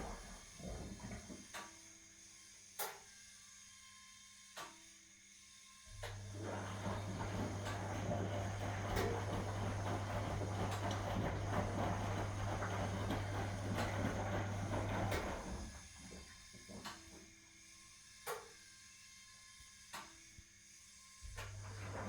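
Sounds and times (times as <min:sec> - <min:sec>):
washing machine motor humming: 0:00.0 - 0:01.4, 0:06.0 - 0:17.3, 0:21.3 - 0:22.0.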